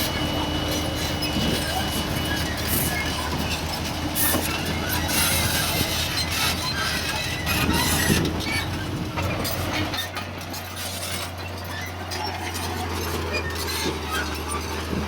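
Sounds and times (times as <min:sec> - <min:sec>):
crawler tracks clanking and squeaking: 0:00.0 - 0:15.0
diesel engine drone: 0:00.0 - 0:15.0.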